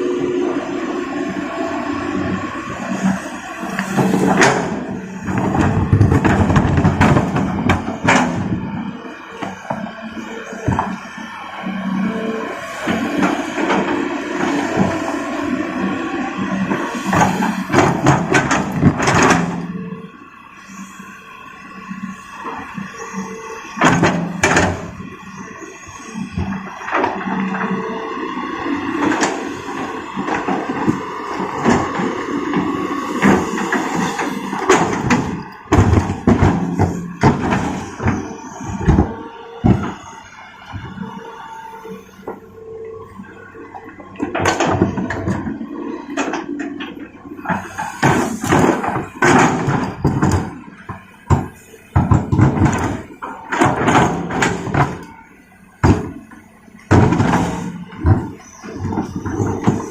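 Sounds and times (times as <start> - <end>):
excavator diesel engine: 0.0 - 59.9
rocks thudding on metal truck bed: 4.1 - 8.6, 34.6 - 40.0, 47.9 - 55.2, 55.8 - 56.2, 56.9 - 59.9.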